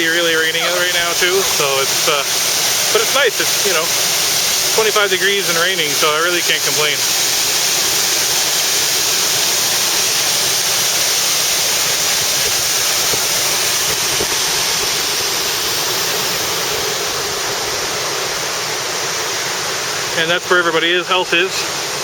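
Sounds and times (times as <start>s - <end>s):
waterfall pouring: 0.0s - 22.0s.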